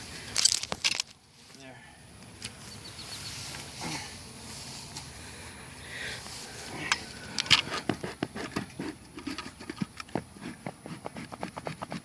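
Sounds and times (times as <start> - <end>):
dry twigs crunching and snapping: 0.3 - 1.2.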